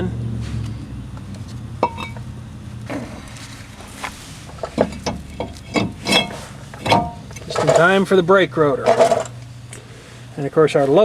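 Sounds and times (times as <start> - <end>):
metal tools clinking: 1.8 - 2.2, 4.6 - 8.0, 8.8 - 9.4.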